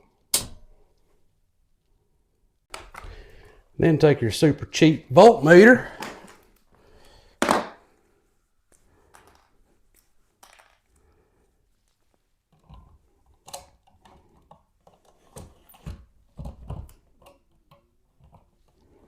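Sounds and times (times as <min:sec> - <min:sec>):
small clicks and knocks of handling: 0:08.7 - 0:11.1, 0:11.8 - 0:19.0.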